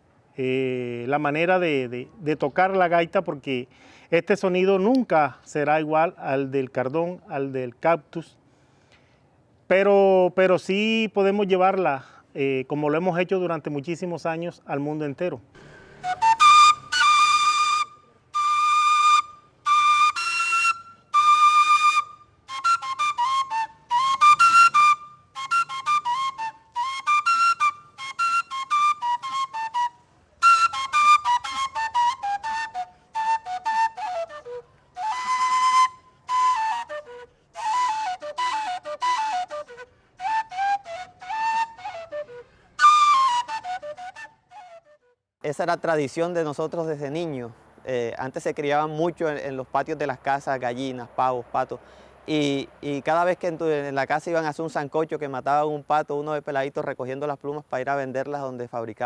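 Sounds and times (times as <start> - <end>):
duct flute melody: 15.6 - 45.3.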